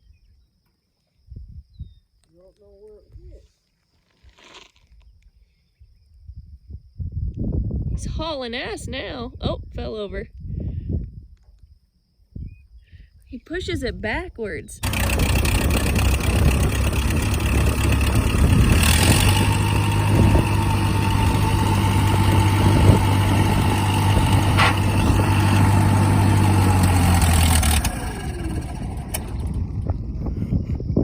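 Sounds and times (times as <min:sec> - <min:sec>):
vehicle engine running: 0:14.8 - 0:30.3.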